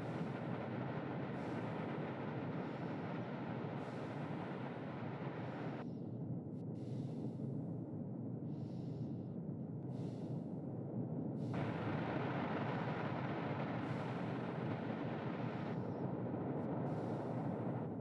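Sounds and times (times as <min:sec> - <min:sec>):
storm wind: 0:00.0 - 0:05.8, 0:11.6 - 0:18.0
rain: 0:11.6 - 0:15.5.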